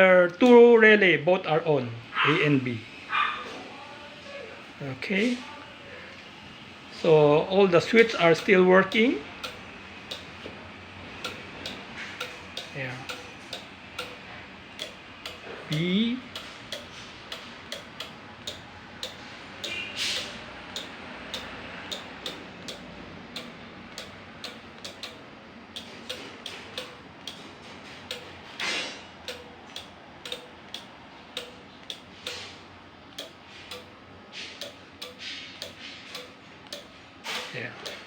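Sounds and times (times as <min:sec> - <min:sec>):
rapid ticking: 0:08.0 - 0:10.4, 0:11.2 - 0:27.5, 0:28.1 - 0:28.4, 0:29.2 - 0:32.4, 0:34.6 - 0:38.0.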